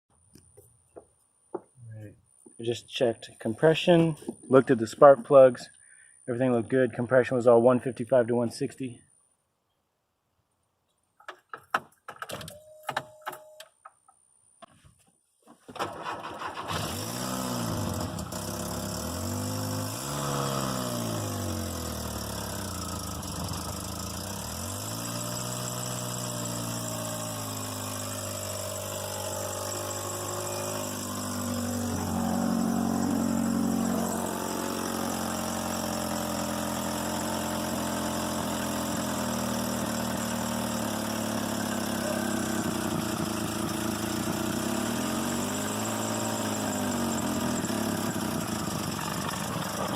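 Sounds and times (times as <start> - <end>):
car engine revving and idling: 16.6 - 49.9.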